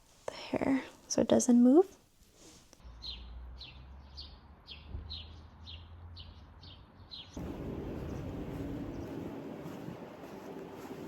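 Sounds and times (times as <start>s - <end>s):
bird chirping: 2.8s - 11.0s
background noise with low hum: 7.4s - 11.0s.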